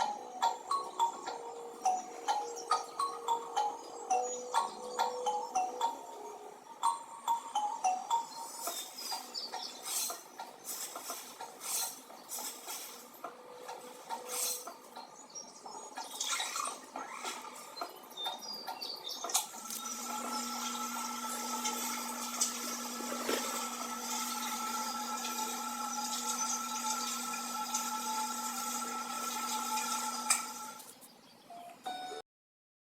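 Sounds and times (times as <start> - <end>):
small objects clicking and scraping: 8.6 - 13.1
small motor humming: 16.0 - 18.4, 19.3 - 31.0.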